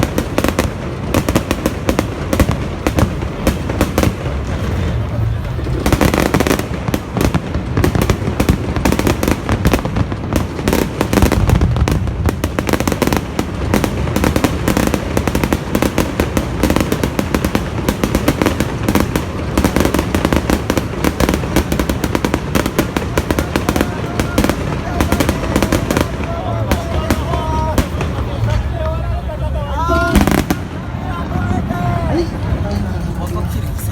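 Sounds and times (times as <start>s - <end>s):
fireworks bangs and crackles: 0.0s - 33.9s.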